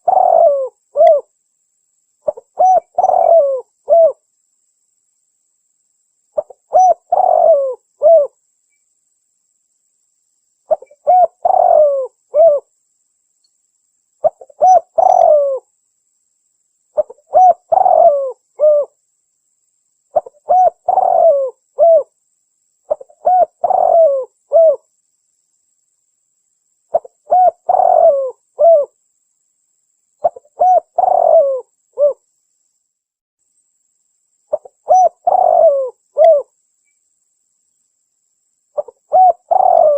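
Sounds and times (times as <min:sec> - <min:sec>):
dove cooing: 0:00.0 - 0:01.3, 0:02.2 - 0:04.2, 0:06.4 - 0:08.4, 0:10.7 - 0:12.7, 0:14.2 - 0:15.7, 0:17.0 - 0:19.0, 0:20.1 - 0:22.1, 0:22.9 - 0:24.8, 0:26.9 - 0:29.0, 0:30.2 - 0:32.2, 0:34.5 - 0:36.5, 0:38.8 - 0:39.9.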